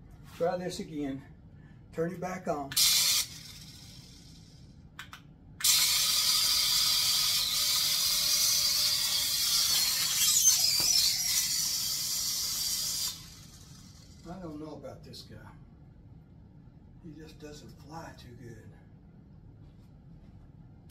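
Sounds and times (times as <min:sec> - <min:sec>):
toy helicopter high-pitched whir: 0:02.7 - 0:04.6, 0:05.6 - 0:14.4.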